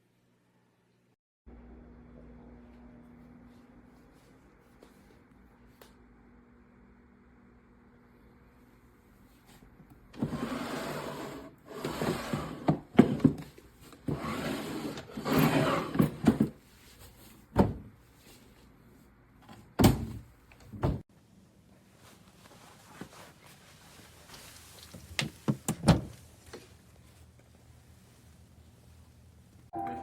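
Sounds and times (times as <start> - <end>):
furniture scraping: 10.2 - 16.6.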